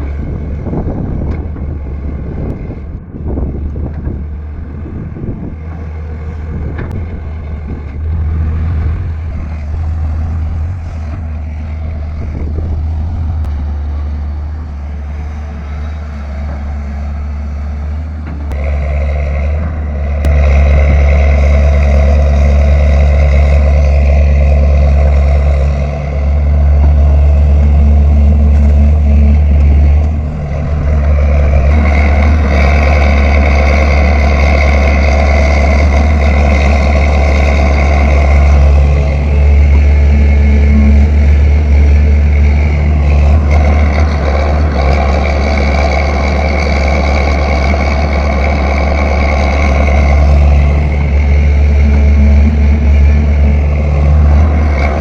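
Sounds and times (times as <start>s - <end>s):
excavator diesel engine running: 0.0s - 55.0s
high hydraulic whine: 0.0s - 55.0s.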